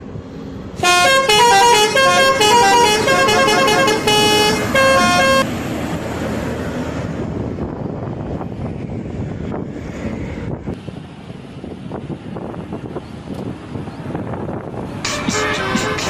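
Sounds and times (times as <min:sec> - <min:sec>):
road and traffic noise: 0:00.0 - 0:16.0
bus melody horn: 0:00.8 - 0:05.5, 0:15.1 - 0:16.0.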